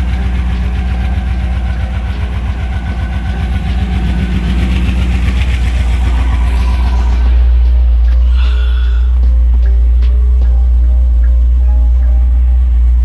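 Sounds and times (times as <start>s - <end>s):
car engine idling: 0.0s - 13.0s
fast ticking chatter: 0.0s - 13.0s.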